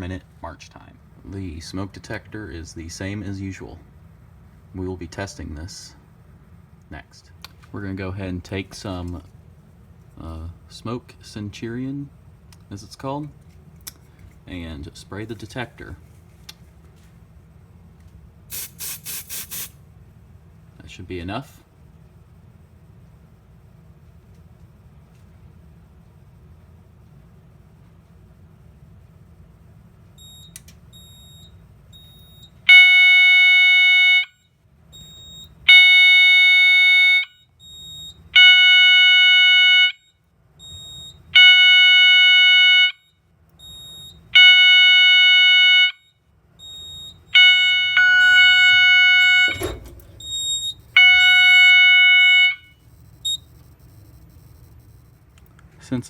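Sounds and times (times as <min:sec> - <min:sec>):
fire alarm horn blasts: 0:30.2 - 0:55.0.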